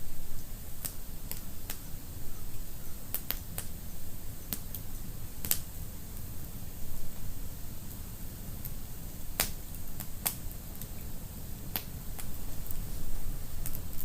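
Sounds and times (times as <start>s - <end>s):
low rumble of flames: 0.0s - 14.0s
wood fire crackling and popping: 0.8s - 1.8s, 3.1s - 3.8s, 4.4s - 6.6s, 7.2s - 14.0s.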